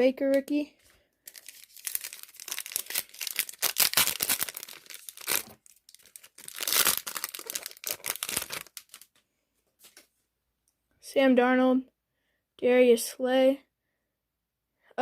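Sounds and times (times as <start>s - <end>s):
foil wrapper crinkling and tearing: 1.2s - 9.1s.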